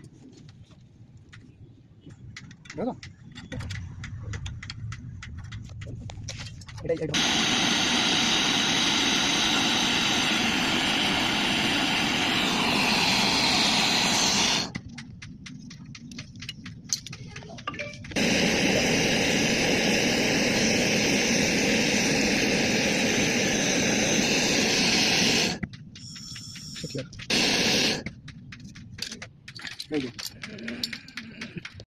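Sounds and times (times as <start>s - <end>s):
pressurised gas hissing: 7.1s - 15.2s, 18.1s - 28.2s.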